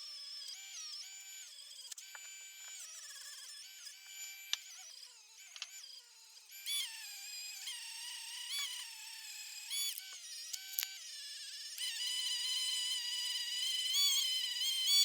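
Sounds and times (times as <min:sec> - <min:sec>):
rotary tool high whine: 0:00.0 - 0:15.0.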